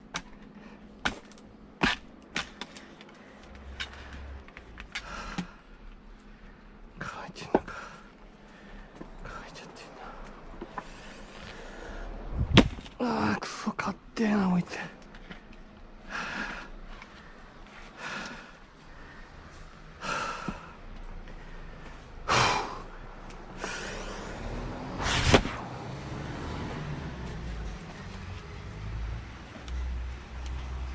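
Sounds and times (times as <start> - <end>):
wooden knocks of firewood splitting: 0.0 - 5.6, 12.4 - 13.0
axe striking wood: 1.0 - 2.8, 12.5 - 13.0, 25.0 - 25.6
heavy breaths of effort: 2.7 - 6.8, 7.6 - 9.3, 9.9 - 12.4, 15.1 - 24.7.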